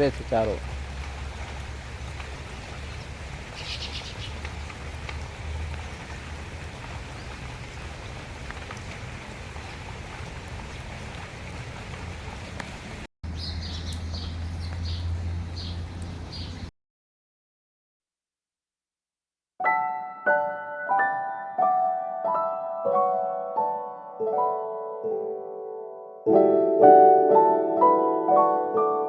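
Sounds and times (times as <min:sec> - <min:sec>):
small birds chirping: 0:02.4 - 0:04.8, 0:13.3 - 0:16.7.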